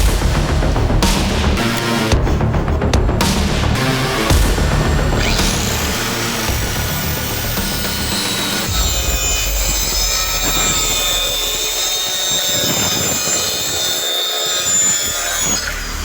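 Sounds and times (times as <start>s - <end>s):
saw blade cutting wood: 1.0s - 2.4s, 3.2s - 16.0s
saw motor whining: 3.7s - 16.0s.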